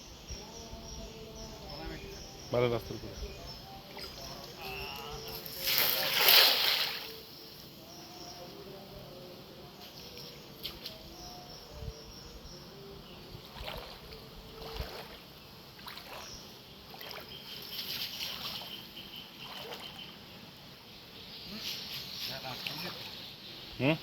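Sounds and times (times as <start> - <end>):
moving water: 0.7 - 12.0, 12.6 - 24.0
floodwater splashing: 3.8 - 7.3, 13.4 - 20.3.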